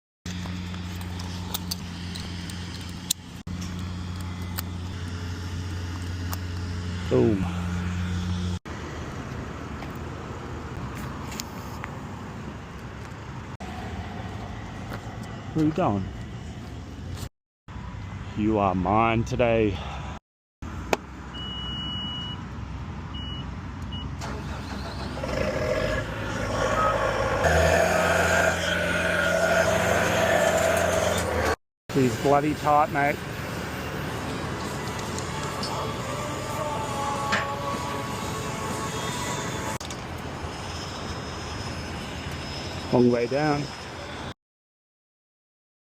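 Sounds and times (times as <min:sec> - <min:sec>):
engine humming: 0:00.3 - 0:17.2, 0:23.8 - 0:31.6
electronic warning beeps: 0:21.4 - 0:22.4.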